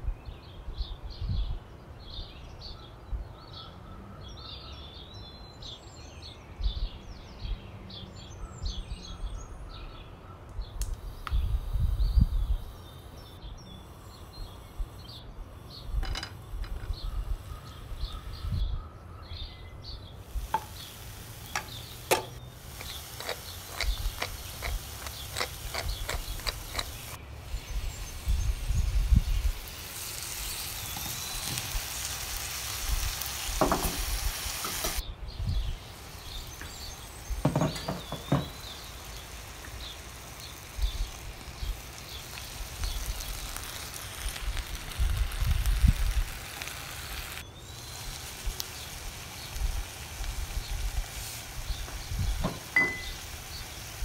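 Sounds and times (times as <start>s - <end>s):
birds chirping: 0.0s - 54.0s.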